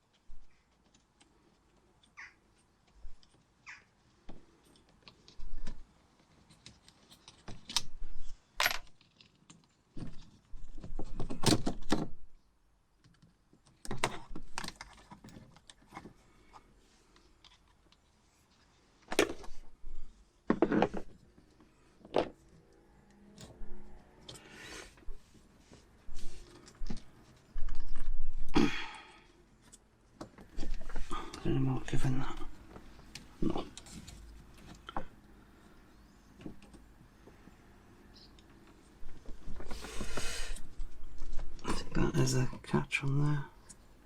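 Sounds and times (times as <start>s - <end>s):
tools and parts clattering: 6.3s - 12.2s, 20.5s - 21.4s.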